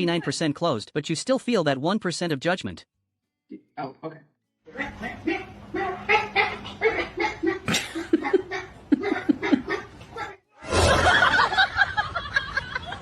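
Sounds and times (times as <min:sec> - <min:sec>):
people laughing: 0:06.2 - 0:10.0, 0:10.7 - 0:13.0.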